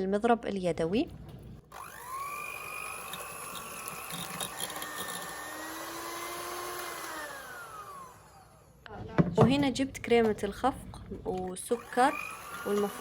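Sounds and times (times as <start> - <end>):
electric hand mixer whining: 1.7 - 8.8, 11.6 - 13.0.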